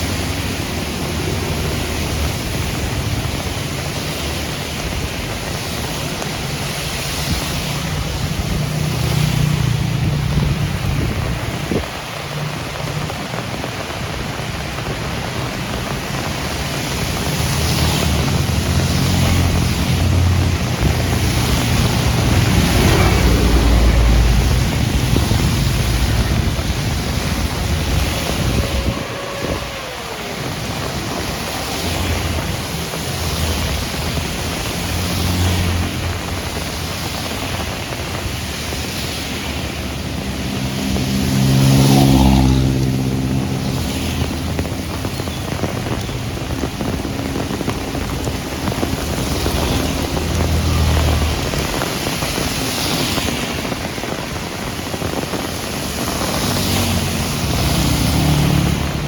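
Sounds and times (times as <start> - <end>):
heavy rain falling: 0.0 - 59.0
vehicles passing on wet road: 0.0 - 59.0.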